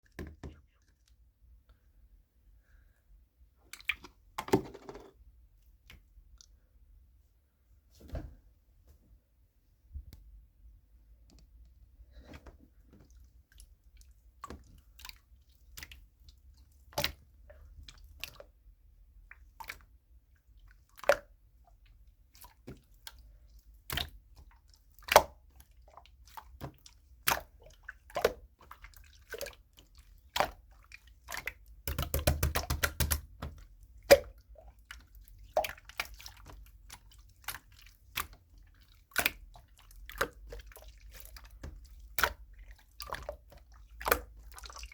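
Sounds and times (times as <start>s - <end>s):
slime wet pops and clicks: 31.4s - 34.4s.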